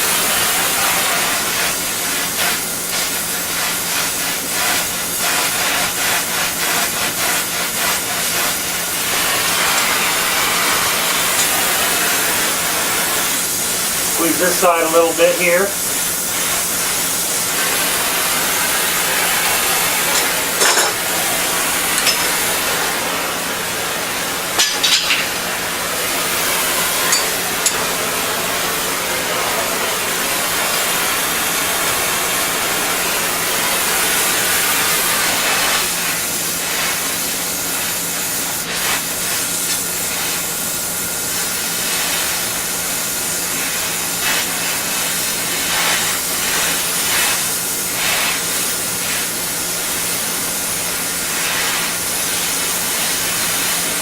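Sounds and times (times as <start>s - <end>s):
air conditioner hiss: 0.0s - 54.0s
clicks of metal clamps: 24.6s - 25.3s.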